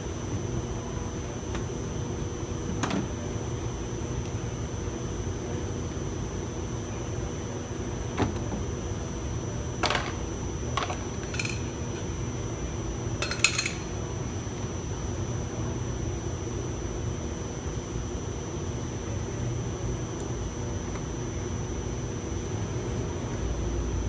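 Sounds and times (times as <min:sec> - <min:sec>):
low background hum: 0:00.0 - 0:24.0
tools clicking and clinking: 0:10.8 - 0:12.0, 0:13.2 - 0:13.9.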